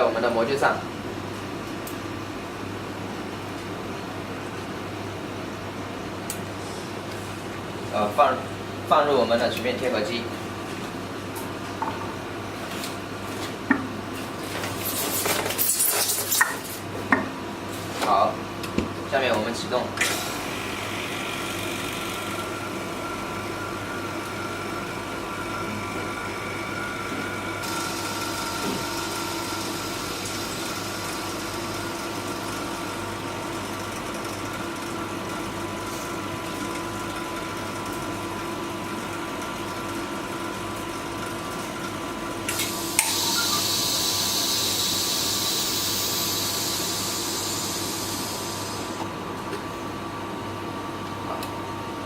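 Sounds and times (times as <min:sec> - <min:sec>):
machine humming with whine: 0:20.3 - 0:37.8, 0:38.4 - 0:51.0
steady air hiss: 0:42.5 - 0:49.0.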